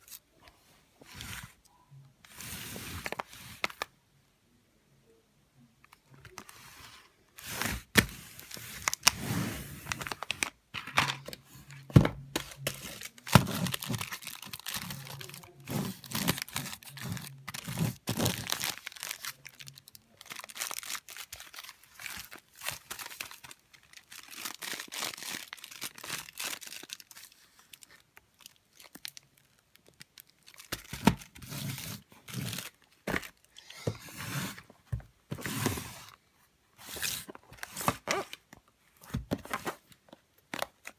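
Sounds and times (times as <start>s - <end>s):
packaging crinkling and tearing: 7.8s - 9.2s, 9.8s - 10.6s, 12.4s - 33.7s.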